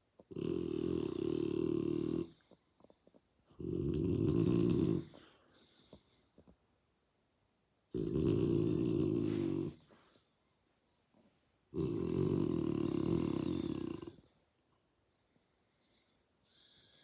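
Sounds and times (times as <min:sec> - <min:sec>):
dog snoring: 0:00.3 - 0:02.5, 0:03.5 - 0:05.4, 0:07.9 - 0:09.8, 0:11.7 - 0:14.3.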